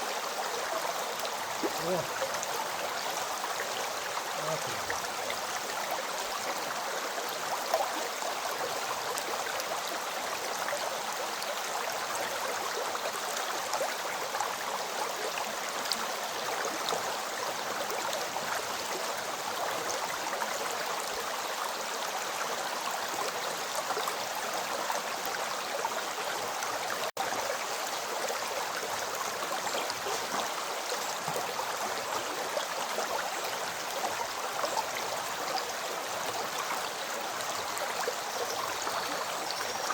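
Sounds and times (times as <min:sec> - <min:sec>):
river water rushing: 0:00.0 - 0:20.8.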